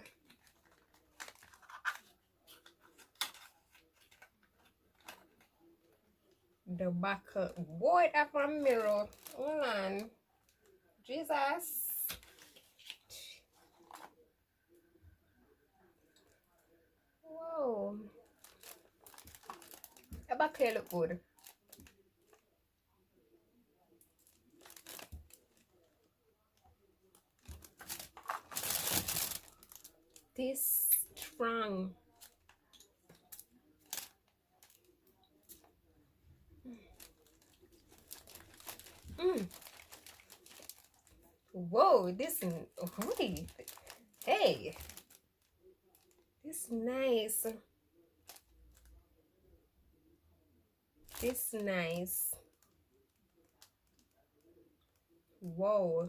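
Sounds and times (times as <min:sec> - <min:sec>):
packaging rustling: 0:00.0 - 0:05.7, 0:08.6 - 0:09.5, 0:18.3 - 0:20.7, 0:24.2 - 0:25.9, 0:27.1 - 0:30.3, 0:32.1 - 0:34.9, 0:36.9 - 0:41.3, 0:42.8 - 0:45.2.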